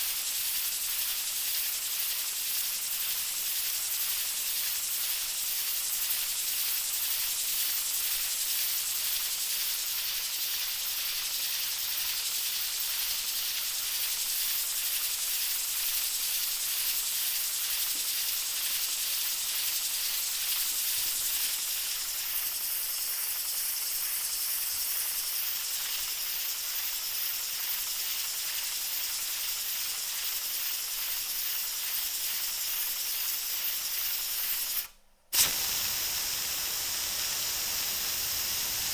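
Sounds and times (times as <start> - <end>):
pressure cooker hissing steam: 0.0 - 38.9.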